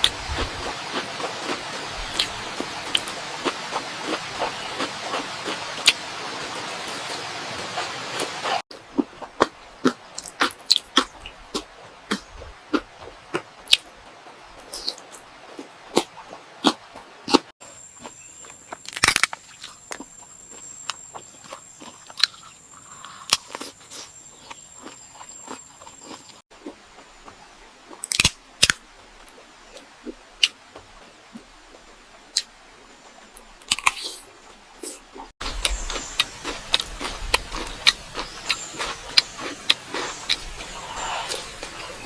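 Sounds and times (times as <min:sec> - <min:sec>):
crunchy food chewing: 0:00.0 - 0:14.0, 0:14.6 - 0:30.6, 0:33.4 - 0:42.0.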